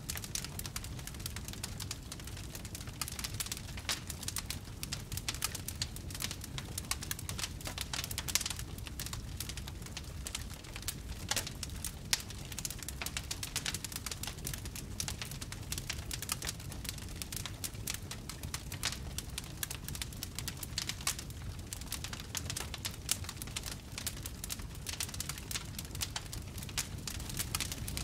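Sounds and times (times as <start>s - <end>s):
fire low rumble: 0.0s - 28.0s
wood fire crackling and popping: 0.0s - 28.0s.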